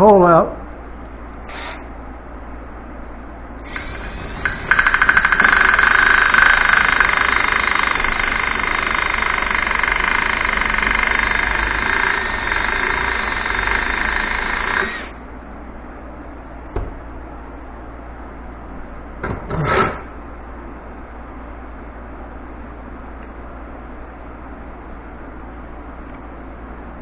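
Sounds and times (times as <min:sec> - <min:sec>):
electric drill drilling: 0:03.7 - 0:15.2.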